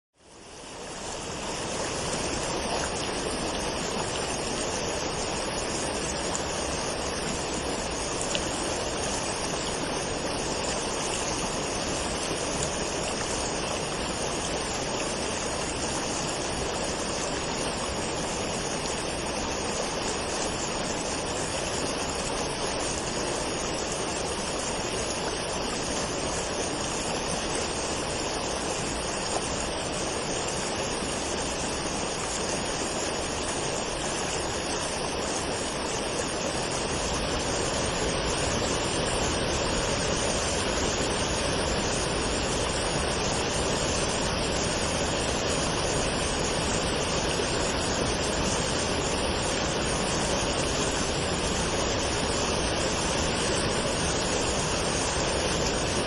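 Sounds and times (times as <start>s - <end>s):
waterfall roaring: 0.2s - 56.0s.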